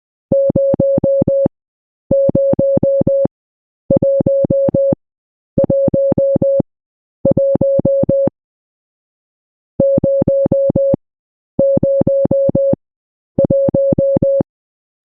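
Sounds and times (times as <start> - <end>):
morse code beeping: 13.4 - 14.4.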